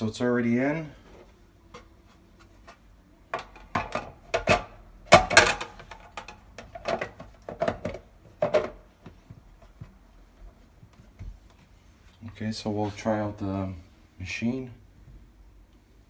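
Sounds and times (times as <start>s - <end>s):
plastic parts knocking and clattering: 1.1s - 11.3s.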